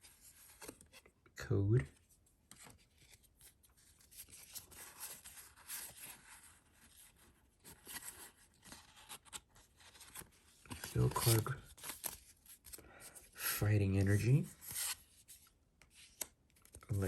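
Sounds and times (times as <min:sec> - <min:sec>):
trading cards shuffling: 0:07.7 - 0:12.8.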